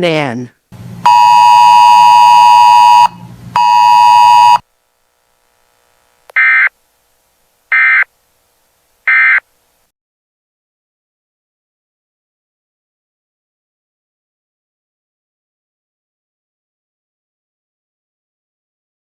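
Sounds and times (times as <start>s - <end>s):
loud buzzer tones: 1.0s - 4.6s, 6.4s - 6.7s, 7.7s - 8.1s, 9.1s - 9.5s
short data bursts: 1.1s - 4.6s, 6.3s - 6.7s, 7.7s - 8.1s, 9.0s - 9.5s.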